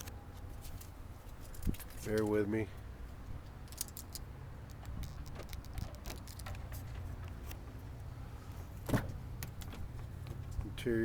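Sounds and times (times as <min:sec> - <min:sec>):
camera handling clicks and rustles: 0:03.6 - 0:07.6.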